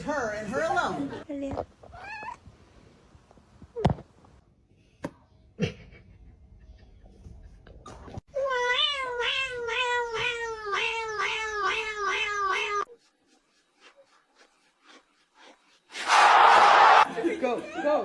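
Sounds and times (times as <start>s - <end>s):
cat meowing: 8.4s - 12.9s.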